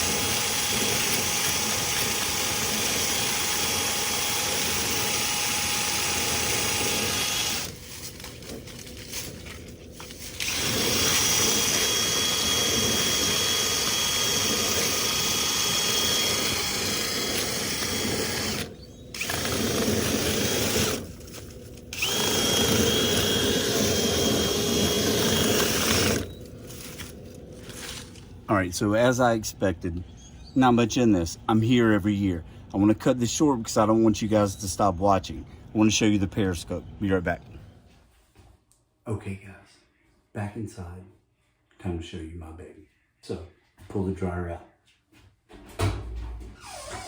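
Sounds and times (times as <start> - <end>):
power drill spinning brush: 0.0 - 28.2.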